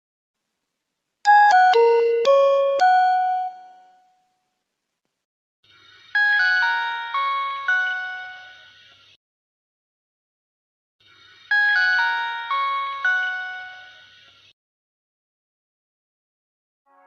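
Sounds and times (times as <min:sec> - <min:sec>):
fuller electronic melody: 0:01.3 - 0:04.0
electronic phone startup chime: 0:01.3 - 0:04.2.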